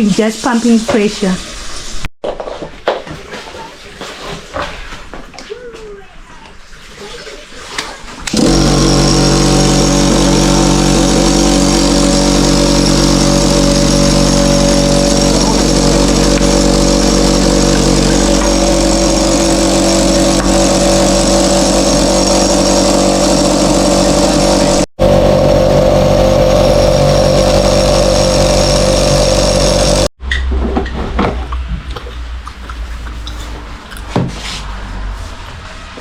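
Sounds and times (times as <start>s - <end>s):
air compressor humming: 8.3s - 30.2s.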